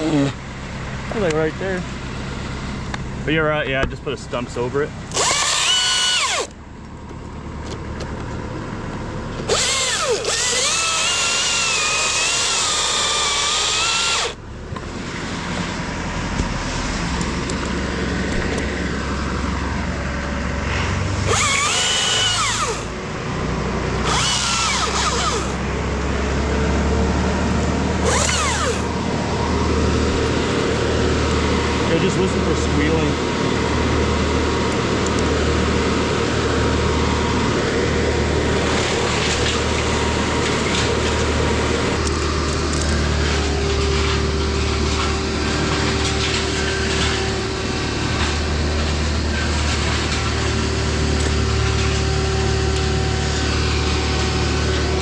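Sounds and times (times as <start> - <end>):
chainsaw revving and idling: 5.0 - 6.6, 9.4 - 14.4, 21.0 - 23.0, 23.8 - 55.0.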